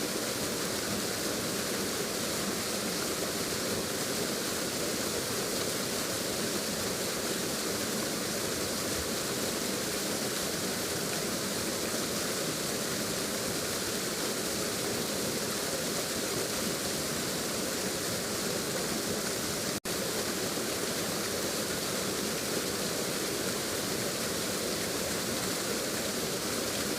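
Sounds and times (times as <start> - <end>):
waterfall rushing: 0.0 - 26.9.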